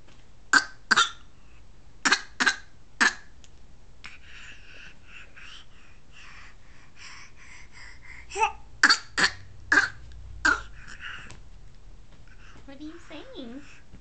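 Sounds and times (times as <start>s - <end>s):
baby cough-like laughing: 0.5s - 1.3s, 2.0s - 3.3s, 8.4s - 11.1s
baby babbling: 8.3s - 8.6s.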